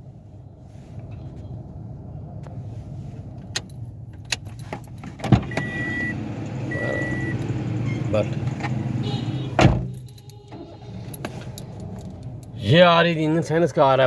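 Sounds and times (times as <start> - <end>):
car engine idling: 3.7 - 13.6
loud thump: 9.5 - 10.0.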